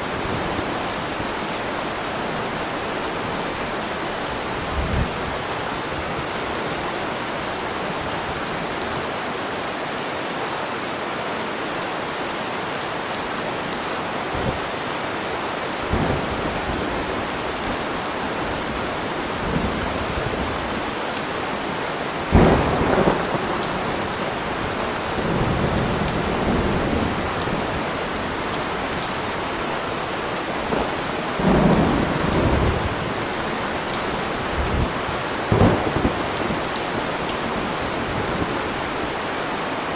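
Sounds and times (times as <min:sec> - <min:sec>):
heavy rain hissing: 0:13.0 - 0:39.9
thunder rumbling: 0:15.9 - 0:20.8, 0:22.3 - 0:39.0.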